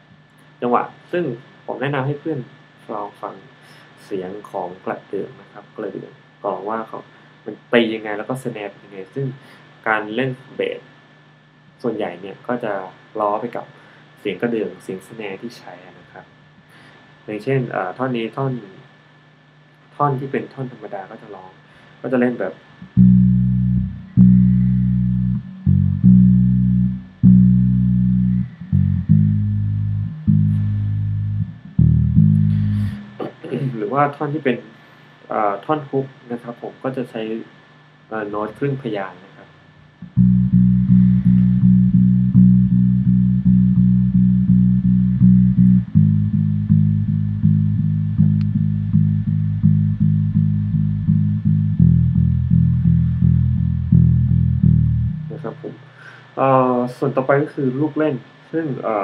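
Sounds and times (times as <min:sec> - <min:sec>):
electric bass guitar line: 0:22.8 - 0:33.8, 0:40.0 - 0:55.7.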